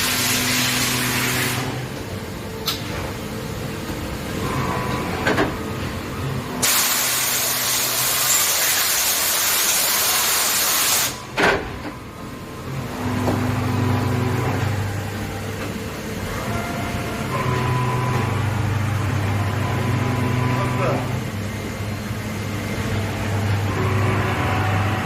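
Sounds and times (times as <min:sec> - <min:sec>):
loud hiss of air or spray: 0:06.6 - 0:11.2.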